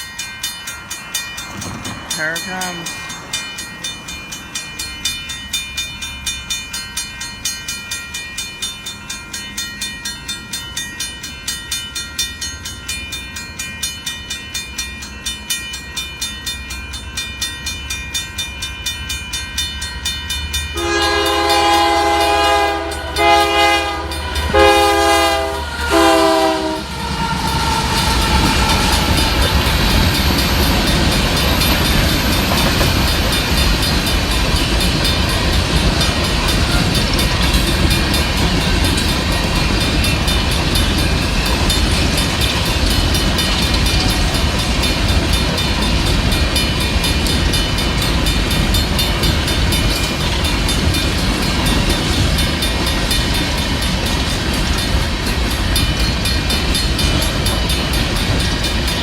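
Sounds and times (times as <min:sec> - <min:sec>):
crossing bell ringing: 0:00.0 - 0:59.0
diesel locomotive engine rumble: 0:00.0 - 0:59.0
train wheels on rail: 0:00.0 - 0:59.0
locomotive horn blasts: 0:20.8 - 0:27.2.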